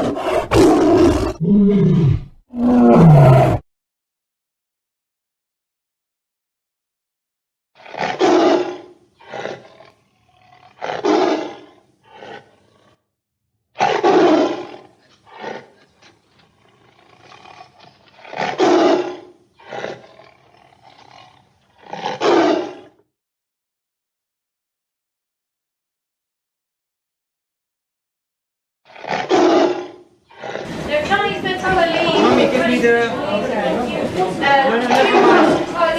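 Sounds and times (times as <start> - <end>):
animal roaring: 0.0 - 3.6, 7.8 - 13.0, 13.8 - 23.0, 28.9 - 30.9, 34.4 - 35.9
animal grunting calls: 7.8 - 13.0, 13.8 - 23.0.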